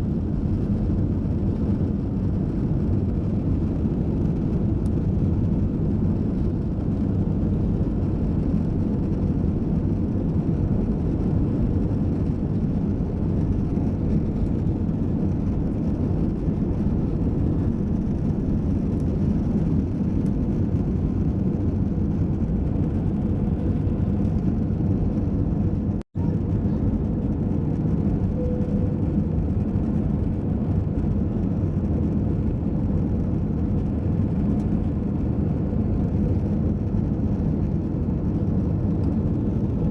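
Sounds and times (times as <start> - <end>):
jet engine roar inside cabin: 0.0 - 39.9.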